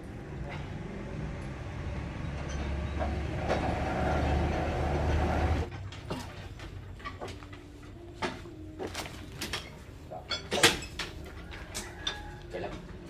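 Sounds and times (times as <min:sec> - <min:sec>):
sawmill machinery humming and rattling: 0:00.0 - 0:07.1.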